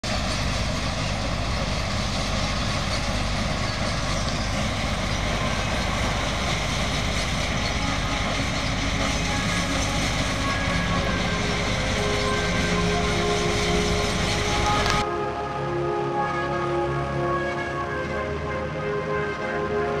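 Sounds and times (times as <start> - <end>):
heavy machine mechanical drone: 0.0 - 15.4.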